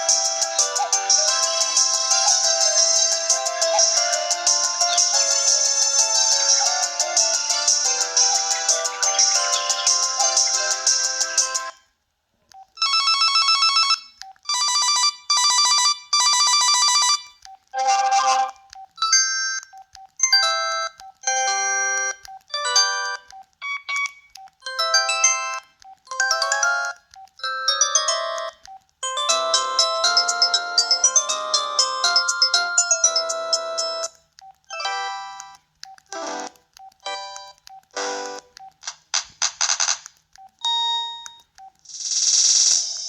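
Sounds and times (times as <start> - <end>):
electronic ringtone trill: 0.0 - 11.8, 20.2 - 34.1
melodic ringtone tune: 0.0 - 11.8, 12.8 - 38.7, 40.6 - 41.6.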